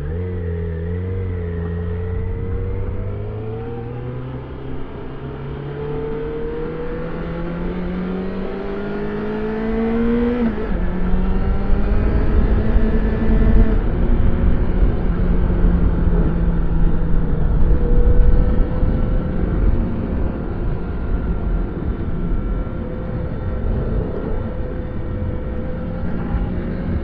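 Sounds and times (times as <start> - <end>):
motorcycle engine accelerating: 0.0 - 27.0
rumbling wind noise: 9.6 - 27.0.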